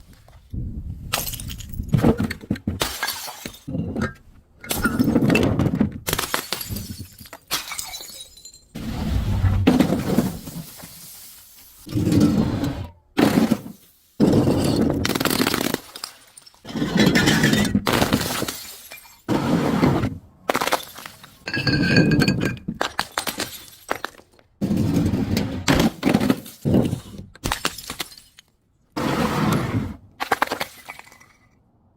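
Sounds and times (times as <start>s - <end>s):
glass bottles shattering: 2.8s - 3.7s, 6.1s - 8.8s, 14.6s - 19.3s, 20.6s - 24.2s, 27.4s - 28.5s.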